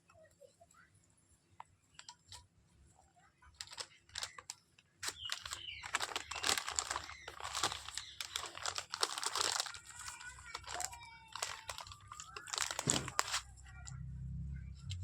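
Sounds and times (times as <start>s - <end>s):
parrot crunching food: 3.6s - 13.5s.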